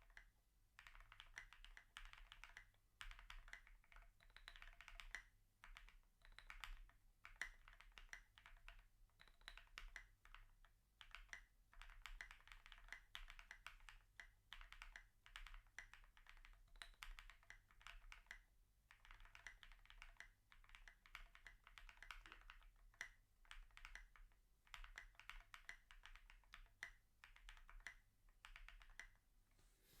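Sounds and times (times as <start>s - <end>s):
mechanical keyboard typing: 0.8s - 18.4s, 19.0s - 29.2s.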